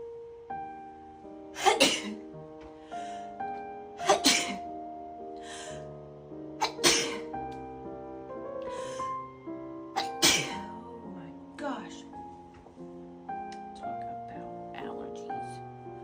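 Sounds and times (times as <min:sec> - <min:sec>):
background music with held notes: 0:00.0 - 0:16.0
breathy inhale: 0:02.8 - 0:03.4, 0:05.4 - 0:06.0, 0:08.6 - 0:09.2
person sneezing: 0:10.0 - 0:10.7.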